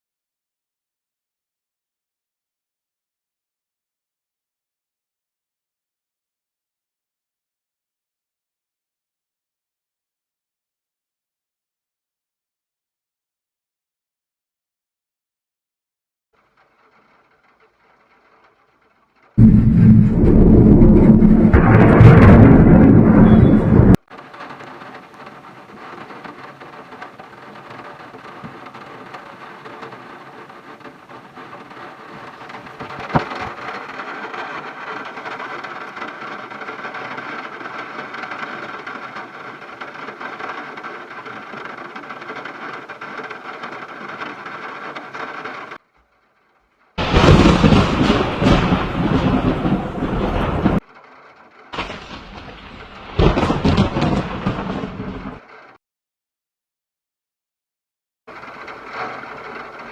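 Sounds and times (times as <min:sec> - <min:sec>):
sharp crack: 0:19.4 - 0:37.2, 0:51.8 - 0:55.4
heavy rain and wind: 0:19.4 - 0:45.8, 0:47.0 - 0:55.6, 0:58.3 - 0:59.9.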